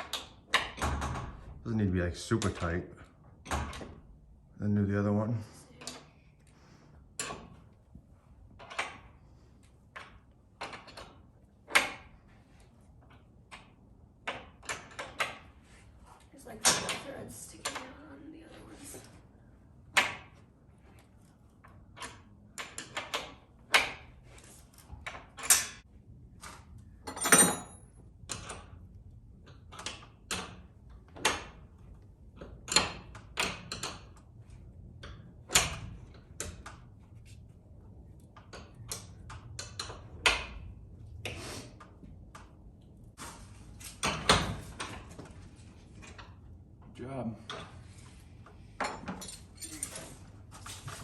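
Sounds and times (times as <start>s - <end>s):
wrench clinking on metal hardware: 27.0s - 27.9s.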